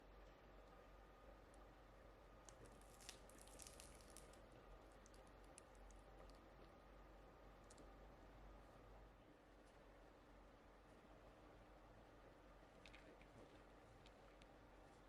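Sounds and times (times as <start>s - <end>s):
faint clicks and crackles: 2.4s - 6.8s, 7.6s - 7.9s, 12.7s - 14.6s.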